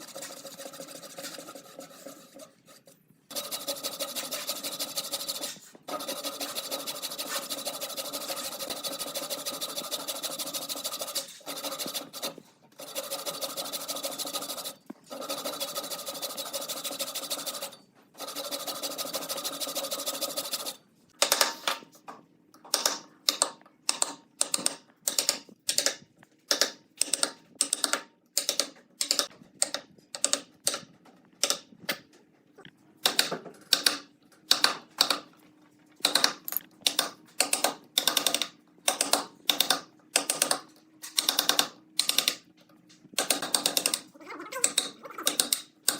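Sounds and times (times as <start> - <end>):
sanding wood strokes: 0.0 - 20.8.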